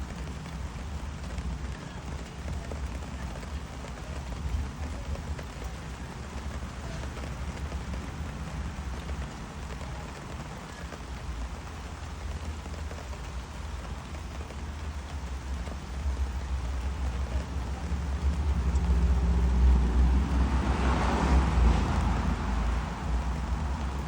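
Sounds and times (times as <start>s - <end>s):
steady rain falling: 0.0s - 24.0s.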